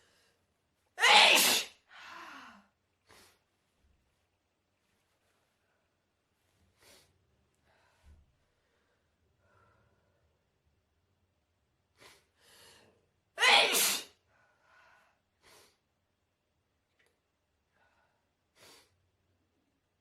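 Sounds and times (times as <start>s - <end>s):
person sneezing: 1.0s - 1.8s, 13.4s - 14.2s.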